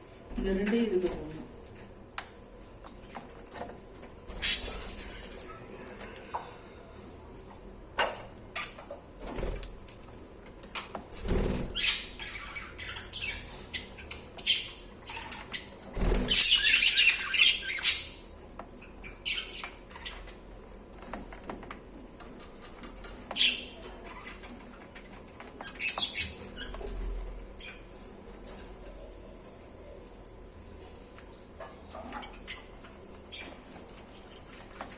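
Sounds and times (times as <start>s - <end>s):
budgerigars chirping and squawking: 4.4s - 5.6s, 11.7s - 18.3s, 19.0s - 20.3s, 23.3s - 24.8s, 25.6s - 27.0s.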